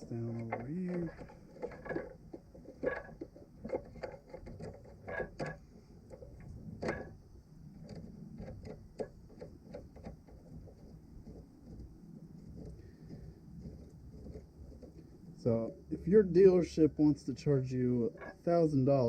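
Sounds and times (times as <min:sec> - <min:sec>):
tools and parts clicking and knocking: 0:00.0 - 0:07.2, 0:07.8 - 0:15.2, 0:18.1 - 0:18.4.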